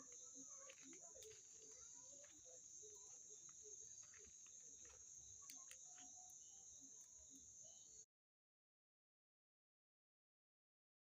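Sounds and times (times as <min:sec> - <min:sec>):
faint clicks: 0:00.0 - 0:02.6, 0:03.4 - 0:06.4
crickets chirring: 0:00.0 - 0:08.1.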